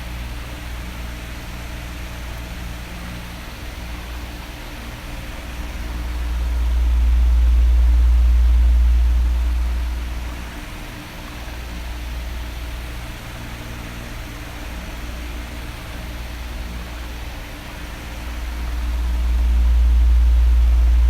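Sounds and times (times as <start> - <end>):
fan motor hum: 0.0 - 21.0
electric fan whooshing: 1.1 - 21.0.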